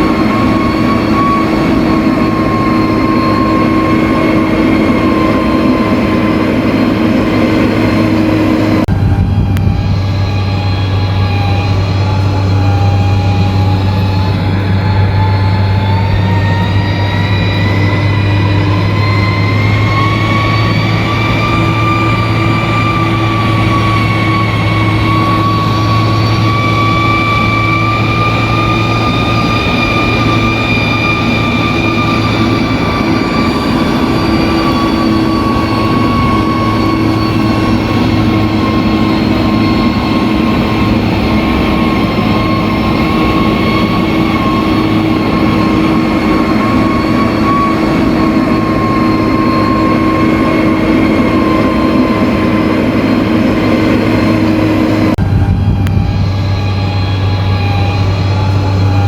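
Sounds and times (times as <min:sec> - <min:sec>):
bulldozer diesel engine: 0:00.0 - 0:59.0.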